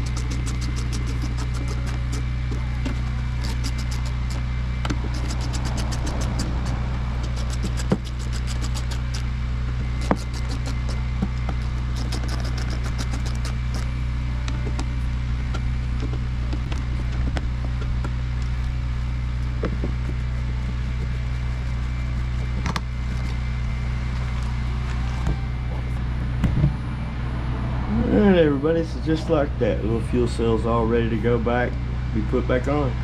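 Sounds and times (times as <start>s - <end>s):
low mechanical hum: 0.0s - 33.0s
quick ticks: 5.1s - 9.2s.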